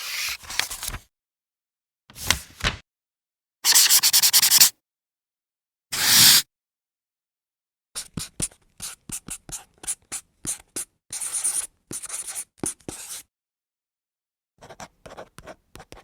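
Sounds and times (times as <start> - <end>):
pen scratching on paper: 3.7 - 4.7, 8.2 - 13.2.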